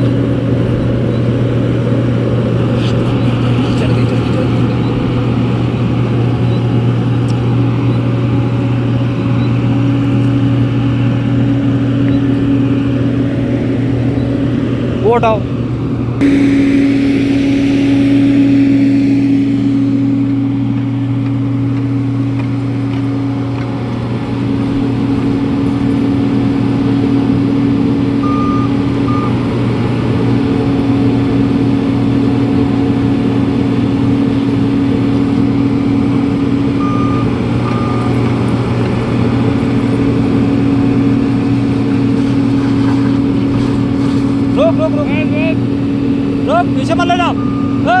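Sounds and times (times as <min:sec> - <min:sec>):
heavy diesel engine running: 0:00.0 - 0:48.0
electronic alarm beeps: 0:02.5 - 0:06.9, 0:16.2 - 0:30.1, 0:35.5 - 0:40.6, 0:46.8 - 0:48.0.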